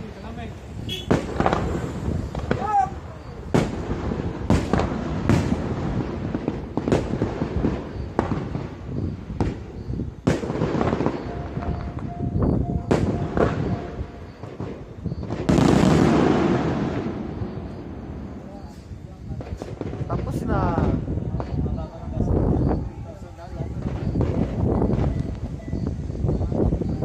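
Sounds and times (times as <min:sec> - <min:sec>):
fireworks banging: 0:00.0 - 0:27.0
fireworks crackling: 0:00.0 - 0:27.0.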